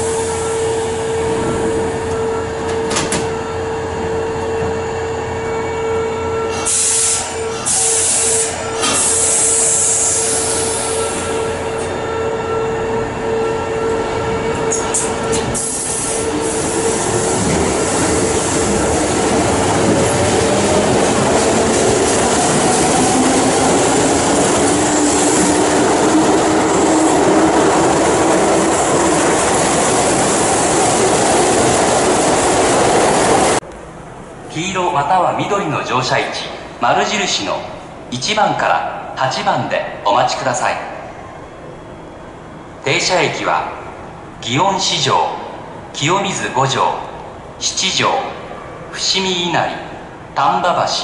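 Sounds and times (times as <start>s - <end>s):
train wheel and running noise: 0.0s - 12.0s, 14.4s - 34.5s.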